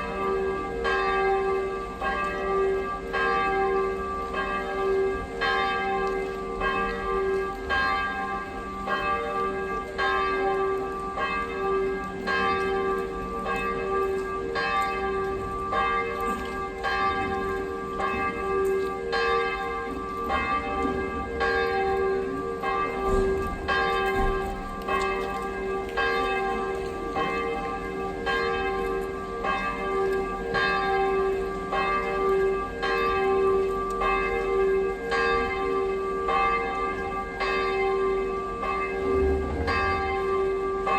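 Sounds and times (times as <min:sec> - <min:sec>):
church bells pealing: 0:00.0 - 0:40.9
deep bell hum: 0:38.9 - 0:40.8.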